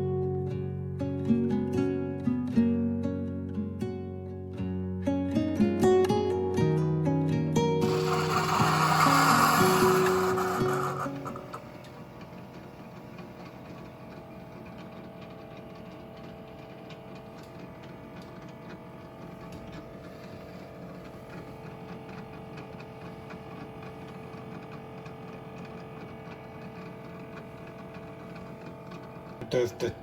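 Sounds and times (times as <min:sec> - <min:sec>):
coffee machine humming: 0:07.8 - 0:30.0.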